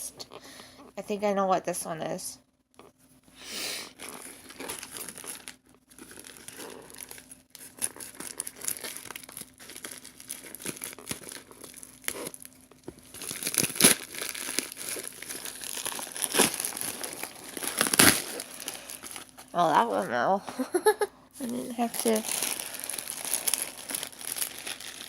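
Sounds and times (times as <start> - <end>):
packaging crinkling and tearing: 3.9 - 20.0, 21.4 - 25.0.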